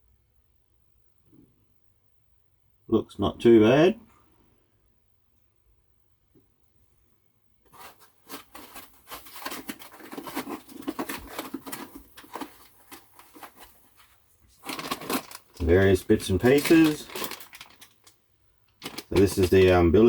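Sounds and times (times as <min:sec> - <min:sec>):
packaging rustling and crinkling: 0:07.7 - 0:19.9.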